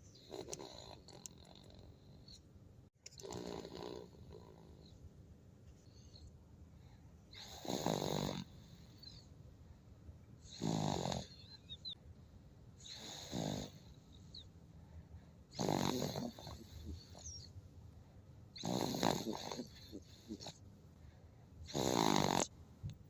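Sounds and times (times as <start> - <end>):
baby snoring: 0.2 - 1.9, 3.2 - 4.9, 7.4 - 9.2, 10.5 - 11.6, 12.9 - 13.9, 15.6 - 17.4, 18.6 - 20.6, 21.7 - 22.5.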